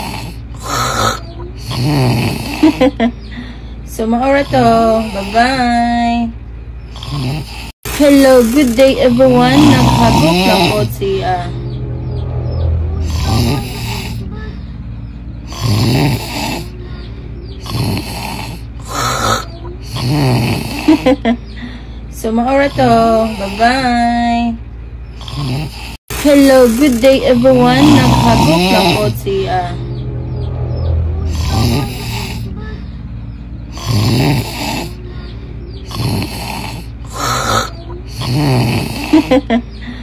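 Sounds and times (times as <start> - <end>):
person snoring loudly: 0.0 - 3.0, 6.9 - 11.4, 12.8 - 14.2, 15.4 - 16.8, 17.6 - 21.2, 25.2 - 29.6, 30.3 - 32.5, 33.7 - 35.0, 35.8 - 39.5.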